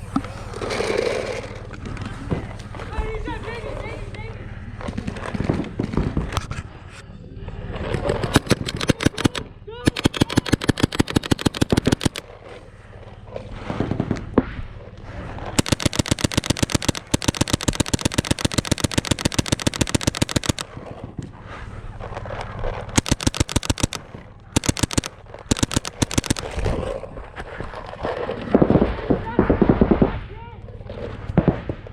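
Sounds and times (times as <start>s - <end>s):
paintball markers firing: 8.0s - 12.3s, 15.6s - 21.0s, 22.9s - 27.0s.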